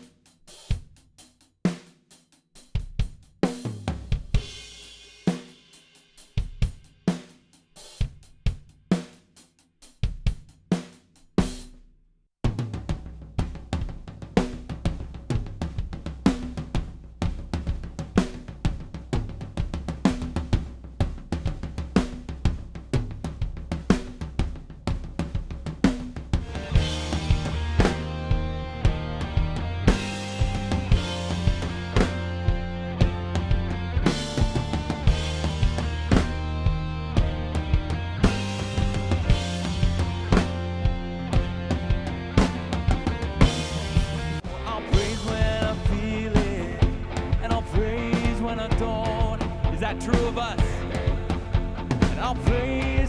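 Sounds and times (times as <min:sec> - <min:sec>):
drum groove: 0:00.0 - 0:53.0
drum kit hits: 0:26.4 - 0:53.0
low bass: 0:26.4 - 0:53.0.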